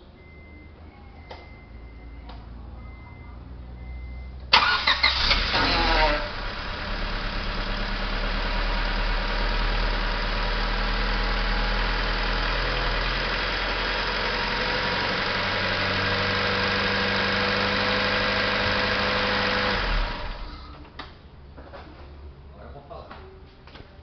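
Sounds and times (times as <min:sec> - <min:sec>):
car engine idling: 0:04.4 - 0:21.0
power steering pump whine: 0:04.5 - 0:07.5.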